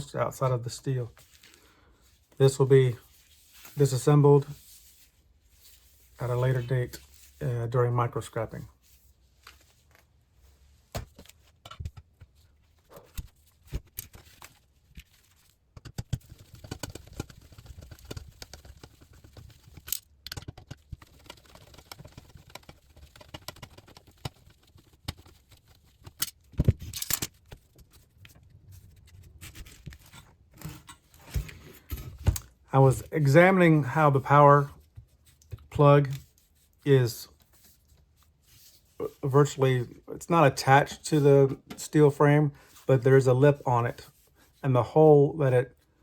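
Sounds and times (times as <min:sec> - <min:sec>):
monitor parts clicking and scraping: 0:11.0 - 0:32.6.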